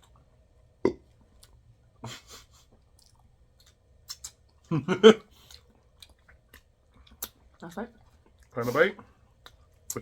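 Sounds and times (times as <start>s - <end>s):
person chewing food: 0.0s - 10.0s.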